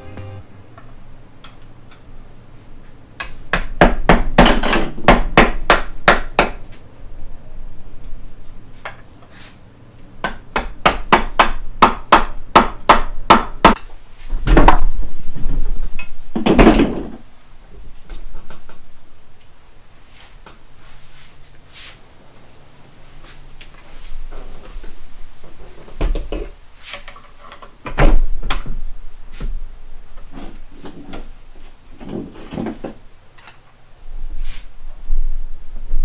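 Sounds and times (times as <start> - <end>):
hammer strikes: 0.0 - 0.8.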